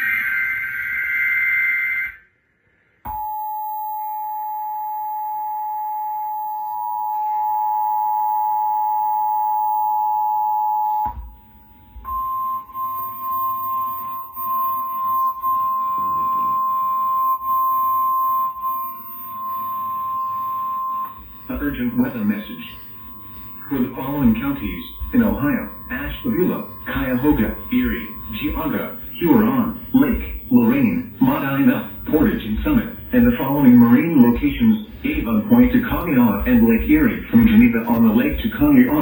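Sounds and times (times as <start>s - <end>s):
two-tone attention signal: 0.0s - 2.2s, 3.1s - 39.0s
digital header burst: 12.1s - 39.0s
steady alert tone: 12.1s - 39.0s.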